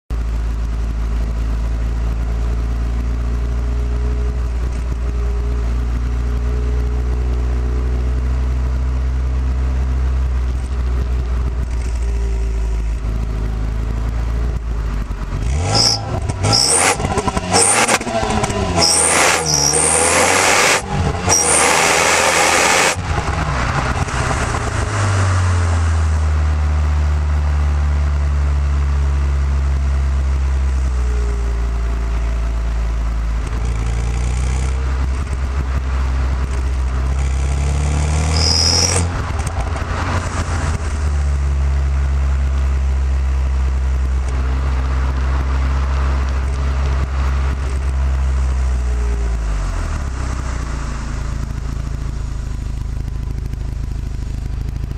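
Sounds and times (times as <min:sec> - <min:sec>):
car engine droning: 0:00.1 - 0:54.9.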